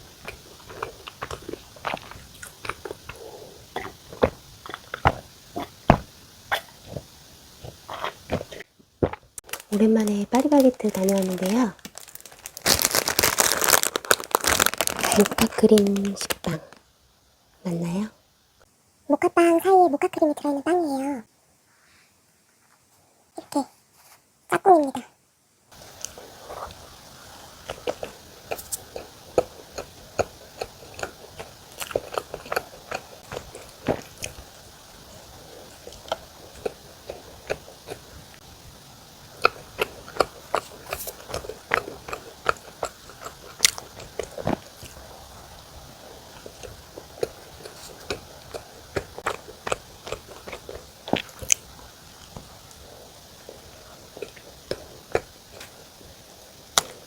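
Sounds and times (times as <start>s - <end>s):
person chewing bread: 0.0s - 9.7s, 25.7s - 57.0s.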